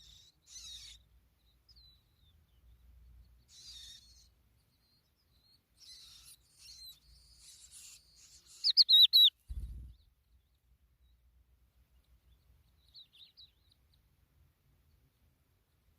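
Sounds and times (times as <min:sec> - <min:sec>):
skylark chirping: 0:03.3 - 0:09.8.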